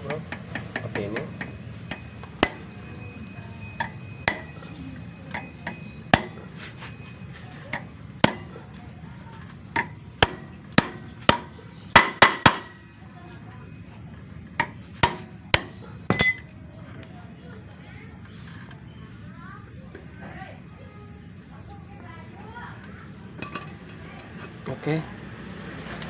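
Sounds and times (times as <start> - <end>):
hammer striking metal: 0.0 - 6.6, 7.6 - 8.6, 9.7 - 12.8, 14.6 - 16.5.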